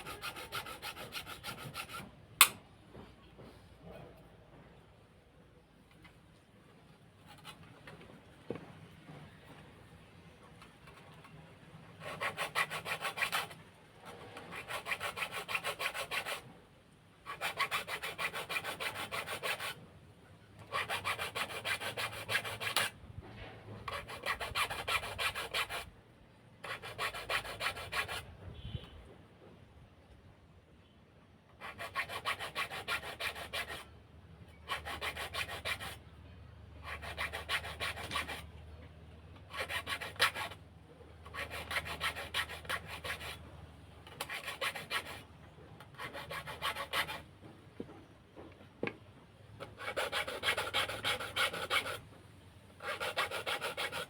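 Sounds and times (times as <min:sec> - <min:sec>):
hand tool scraping wood: 0:00.0 - 0:04.1, 0:12.0 - 0:16.5, 0:17.3 - 0:19.8, 0:20.7 - 0:25.9, 0:26.6 - 0:28.7, 0:31.6 - 0:33.9, 0:34.7 - 0:36.0, 0:36.8 - 0:38.5, 0:39.5 - 0:40.6, 0:41.2 - 0:43.4, 0:44.1 - 0:48.6, 0:49.6 - 0:52.1, 0:52.8 - 0:54.0.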